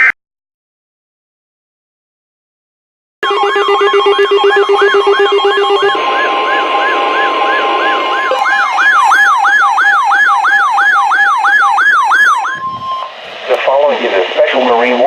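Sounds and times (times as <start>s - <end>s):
steady alert tones: 3.2s - 13.2s
electronic siren yelping: 3.2s - 13.4s.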